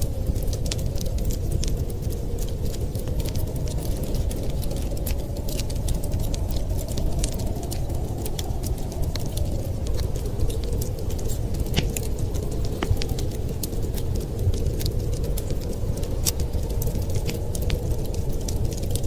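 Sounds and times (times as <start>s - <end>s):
low fire rumble: 0.0s - 19.0s
wood fire crackling and popping: 0.0s - 19.0s.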